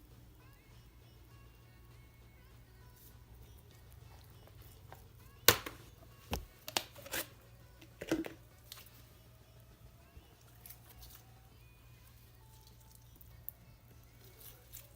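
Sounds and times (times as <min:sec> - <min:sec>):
plastic containers clicking: 0:07.8 - 0:08.4.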